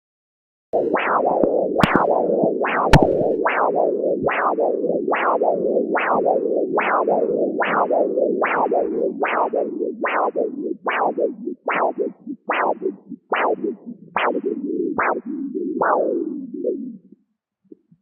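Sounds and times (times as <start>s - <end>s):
rhythmic whooshing pulse beat: 0.8s - 13.8s
sharp clicks: 1.8s - 2.1s, 2.9s - 3.4s.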